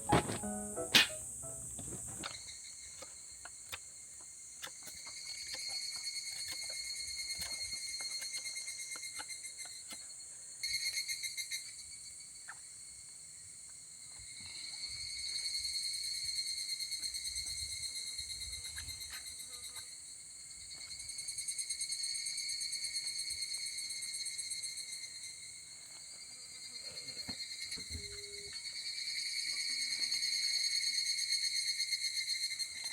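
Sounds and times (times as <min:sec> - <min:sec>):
insects chirring: 0:00.0 - 0:09.3.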